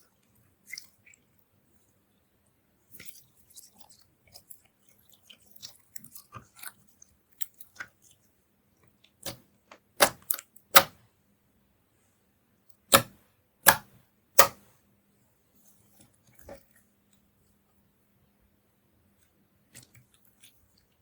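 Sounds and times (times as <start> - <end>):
slime air pockets popping: 12.9 - 14.6.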